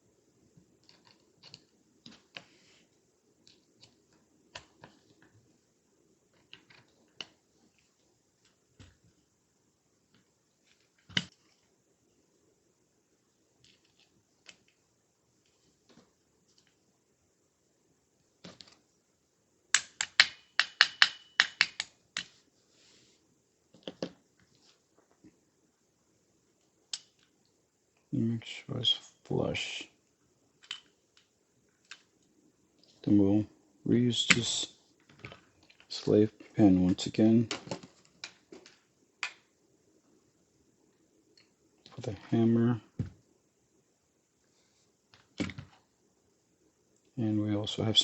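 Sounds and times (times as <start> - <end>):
small metal clicks and taps: 19.7 - 22.3.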